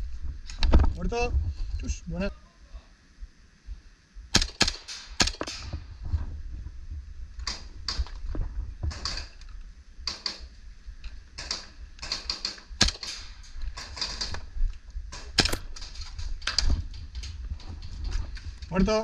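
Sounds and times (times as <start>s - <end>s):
low rumble of handling and wind: 0.0s - 19.0s
airsoft gun shots: 4.3s - 5.8s, 10.0s - 10.5s, 11.4s - 14.4s, 15.1s - 16.0s.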